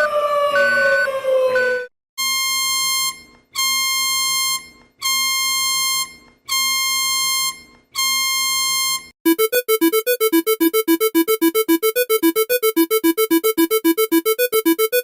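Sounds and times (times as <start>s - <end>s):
buzzy alert beeps: 9.3s - 15.0s
warbling two-pitch alarm: 9.3s - 15.0s.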